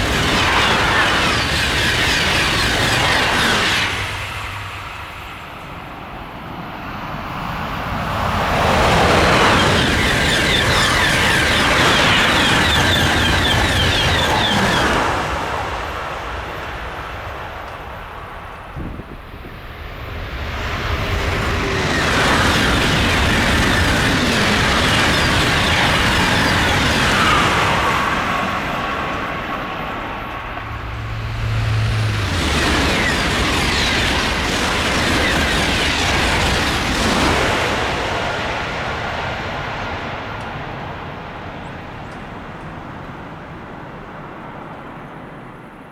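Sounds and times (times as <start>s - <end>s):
high-speed train passing: 0.0s - 45.9s.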